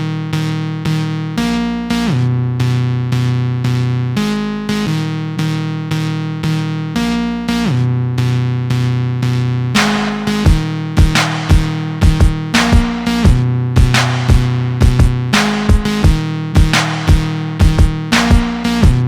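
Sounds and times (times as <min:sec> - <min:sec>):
bass line with sliding drops: 0:00.0 - 0:19.0
pulsing synthesizer chords: 0:08.8 - 0:19.0
drum beats: 0:09.8 - 0:19.0.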